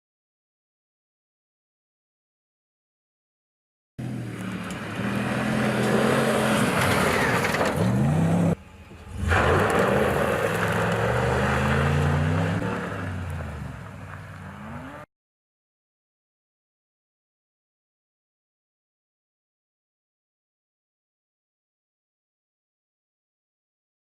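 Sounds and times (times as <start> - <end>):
pickup truck engine revving: 4.0 - 13.8.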